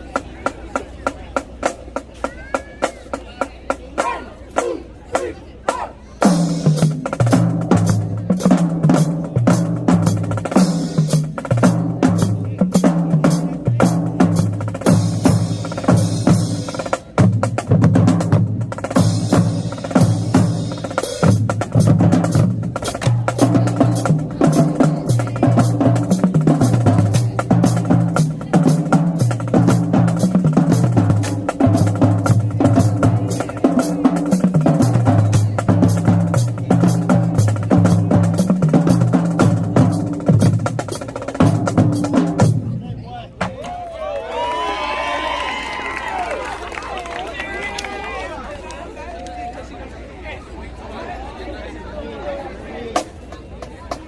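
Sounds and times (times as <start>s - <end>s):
pitched bass drum notes: 3.7s - 43.6s.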